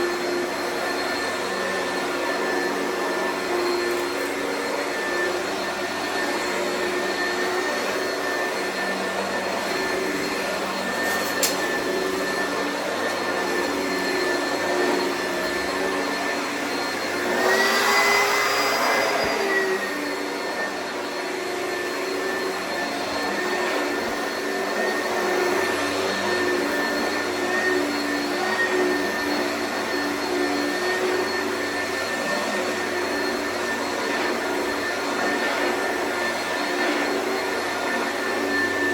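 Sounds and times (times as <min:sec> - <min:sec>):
vacuum cleaner motor whine: 0:00.0 - 0:38.9.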